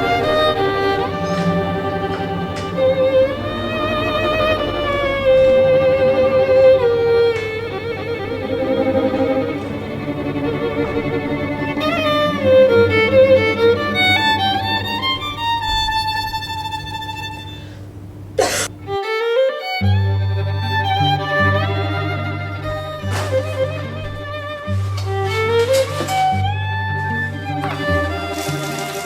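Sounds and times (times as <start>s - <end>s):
rising sweep: 0.0s - 17.8s
violin melody with vibrato: 0.0s - 29.0s.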